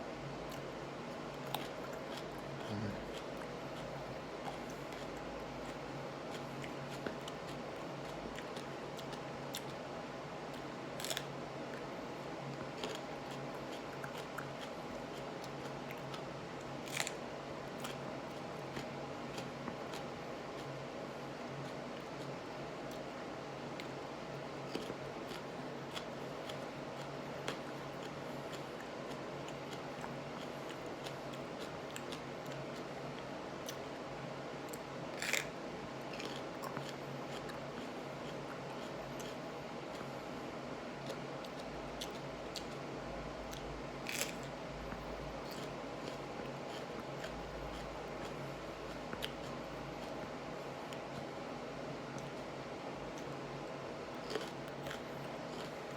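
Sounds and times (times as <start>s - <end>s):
steady electrical hum: 0.0s - 55.9s
crunch while chewing: 0.4s - 34.0s, 34.6s - 55.9s
person chewing: 1.4s - 9.8s, 12.6s - 20.8s, 24.6s - 33.8s, 34.7s - 40.1s, 41.0s - 42.8s, 43.5s - 51.3s, 54.1s - 55.9s.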